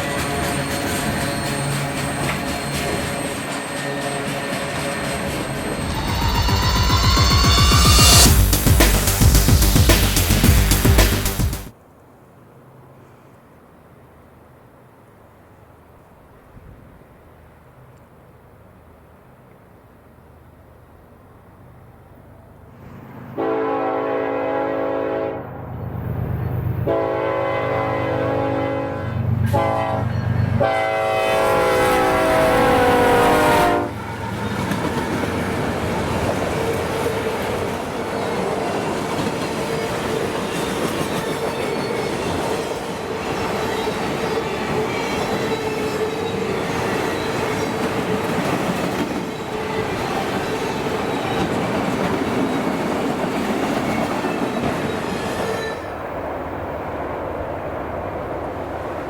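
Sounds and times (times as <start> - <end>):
wheels clacking over rail joints: 0.0 - 6.1, 33.9 - 56.3
faint wheel squeal: 0.0 - 8.3
train rumbling past: 0.0 - 11.8, 18.7 - 59.0
train horn chord: 23.3 - 25.6, 26.8 - 34.0.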